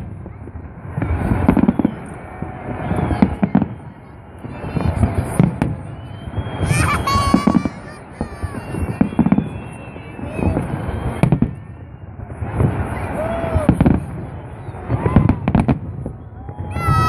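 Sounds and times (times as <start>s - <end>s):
firework shells booming and cracking: 0.0s - 17.0s
whistling rising shells: 5.7s - 7.8s, 8.5s - 12.2s.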